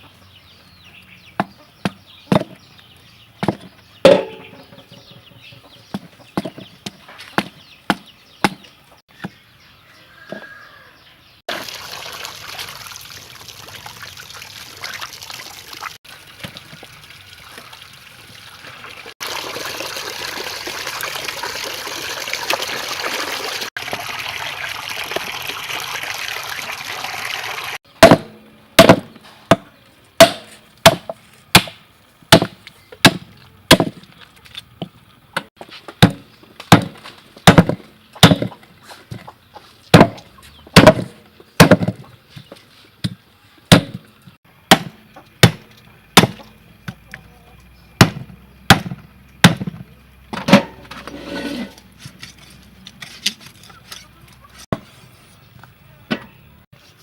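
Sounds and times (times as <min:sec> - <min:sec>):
cleaver chopping on a board: 0:06.0 - 0:08.6, 0:28.0 - 0:34.0, 0:36.0 - 0:38.5, 0:40.0 - 0:40.2, 0:40.8 - 0:42.0, 0:43.7 - 0:44.0, 0:44.7 - 0:46.4, 0:48.0 - 0:49.8
running water splashing: 0:11.5 - 0:27.8.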